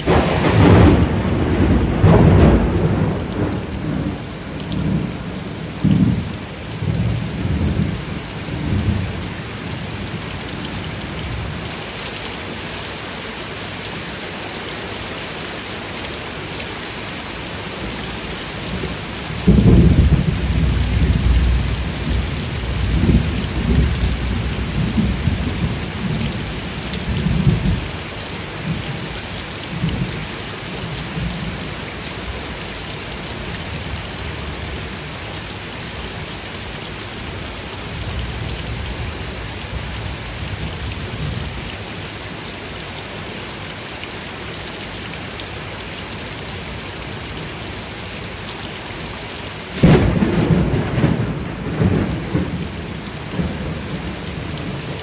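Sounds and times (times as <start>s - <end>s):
thunder rumbling: 0.0s - 11.5s, 18.7s - 27.9s, 49.8s - 55.0s
heavy rain hissing: 0.0s - 55.0s
loud thunder clap: 0.1s - 5.1s, 19.5s - 26.2s, 49.8s - 55.0s.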